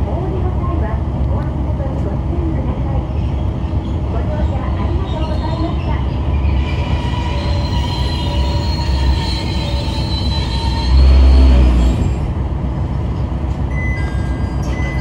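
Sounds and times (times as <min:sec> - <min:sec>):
train wheels squealing: 0:03.1 - 0:12.3.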